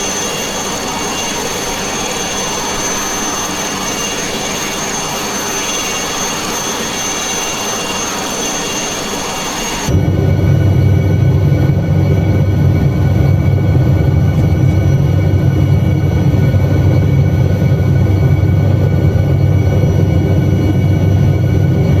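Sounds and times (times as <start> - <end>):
helicopter running: 0.0 - 22.0.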